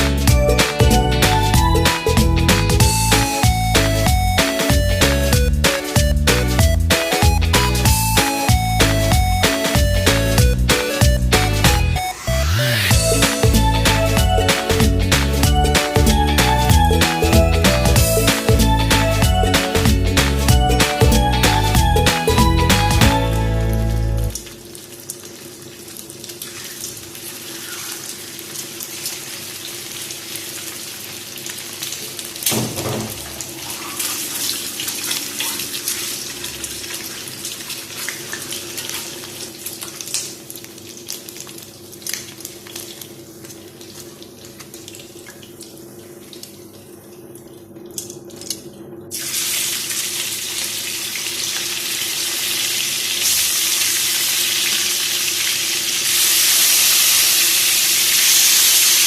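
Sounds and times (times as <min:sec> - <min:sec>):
tap water running into sink: 0:31.5 - 0:46.9.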